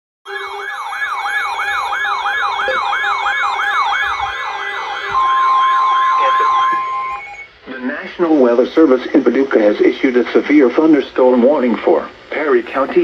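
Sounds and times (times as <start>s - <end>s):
electronic warning siren: 0.2s - 7.6s
steady alert tone: 0.3s - 7.5s
steady background tones: 0.3s - 13.0s.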